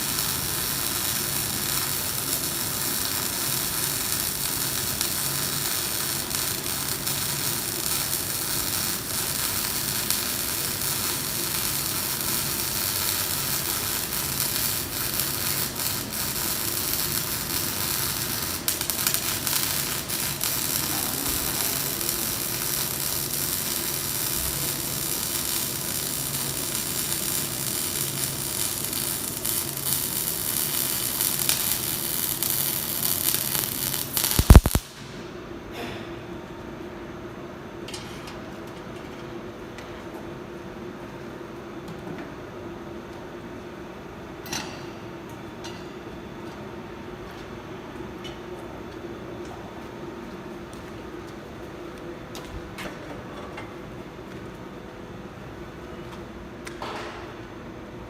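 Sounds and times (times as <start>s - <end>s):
arc welding crackling sizzle: 0.0s - 35.2s.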